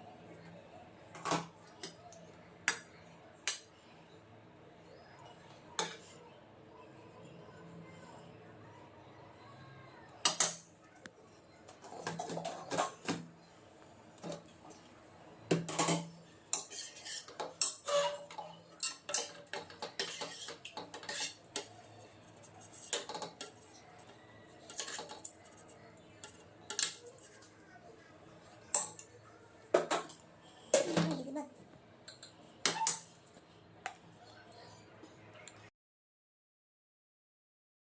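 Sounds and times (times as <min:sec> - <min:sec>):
dishes and cutlery clattering: 0:11.7 - 0:13.3, 0:15.5 - 0:21.8, 0:22.7 - 0:23.6, 0:24.7 - 0:27.2, 0:29.7 - 0:31.4, 0:32.0 - 0:33.2.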